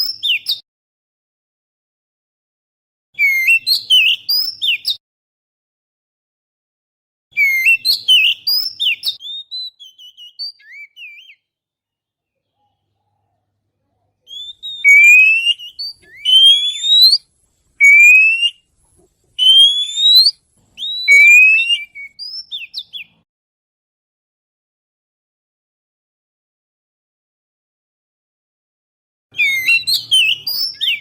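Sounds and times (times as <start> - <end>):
magpie-robin chirps and twitters: 0.0 - 0.6, 3.2 - 5.0, 7.4 - 11.5, 14.2 - 17.2, 17.8 - 23.2, 29.4 - 31.0
loud rising bird whistles: 3.2 - 5.0, 7.4 - 11.4, 14.3 - 18.7, 19.4 - 23.2, 29.4 - 31.0.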